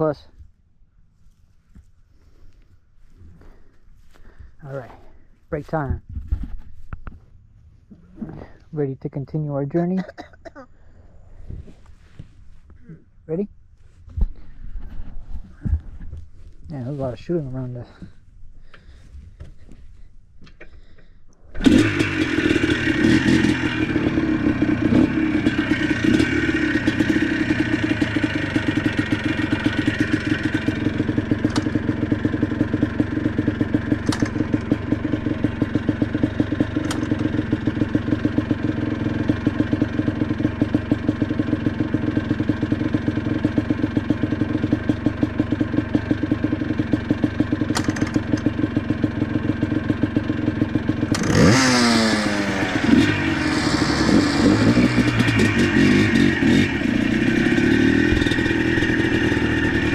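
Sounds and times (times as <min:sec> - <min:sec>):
atv engine running: 0:17.2 - 0:59.9
sharp clicks: 0:34.0 - 0:34.6, 0:47.7 - 0:48.5.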